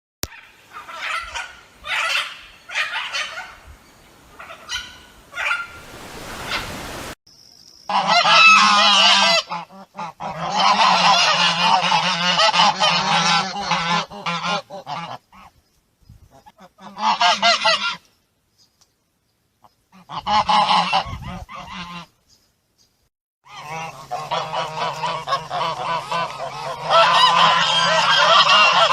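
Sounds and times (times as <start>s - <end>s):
geese honking: 0.3s - 3.6s, 4.4s - 6.9s, 7.9s - 15.5s, 16.4s - 18.1s, 19.9s - 22.1s, 23.4s - 28.9s.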